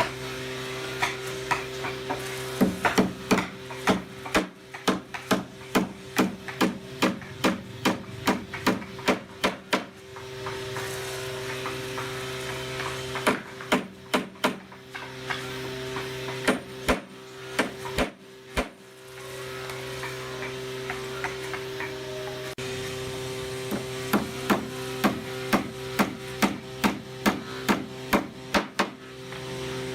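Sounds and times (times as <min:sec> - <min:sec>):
steady machine hum: 0:00.0 - 0:29.9
hammer striking wood: 0:01.0 - 0:10.9, 0:11.5 - 0:15.4, 0:16.0 - 0:18.8, 0:23.7 - 0:29.0.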